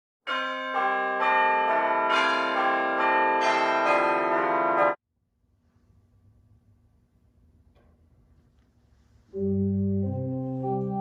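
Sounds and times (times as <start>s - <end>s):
church bells ringing: 0.2s - 5.0s.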